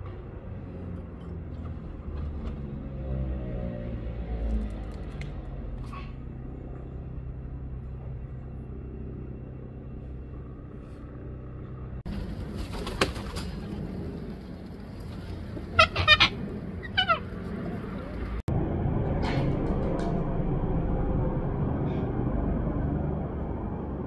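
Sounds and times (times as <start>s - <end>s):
noisy background with clicks: 4.3s - 5.6s
steady low hum: 5.4s - 24.0s
pigeons cooing: 12.2s - 18.4s.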